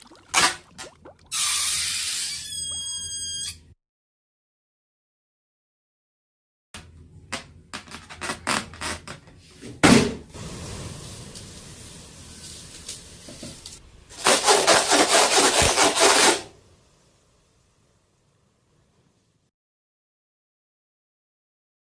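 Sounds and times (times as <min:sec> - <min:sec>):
rubbing scrape: 0:14.1 - 0:16.5
rasping strokes: 0:14.2 - 0:16.5.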